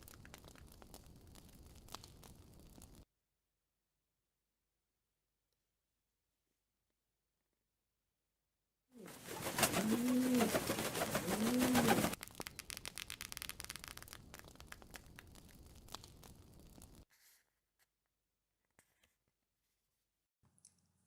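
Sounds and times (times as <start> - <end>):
bird cooing: 9.0 - 12.2
bird wings flapping: 9.0 - 17.0.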